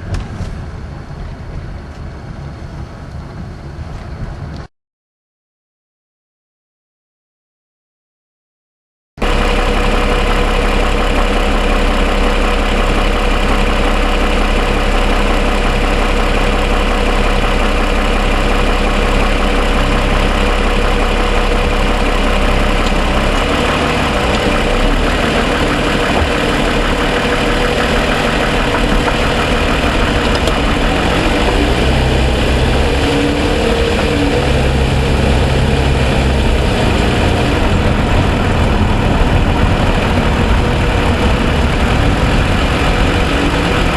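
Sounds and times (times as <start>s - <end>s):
car engine idling: 9.2s - 43.9s
engine ticking: 9.2s - 43.9s.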